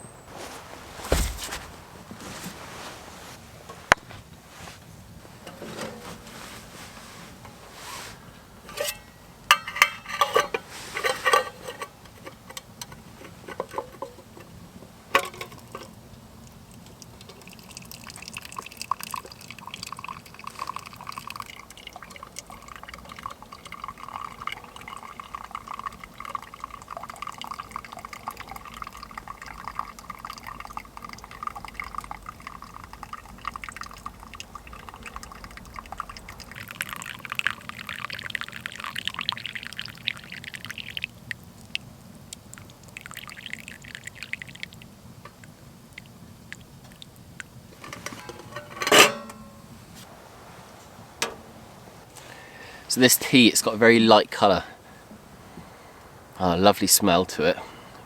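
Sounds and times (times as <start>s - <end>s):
tea pouring into a cup: 15.4s - 48.7s.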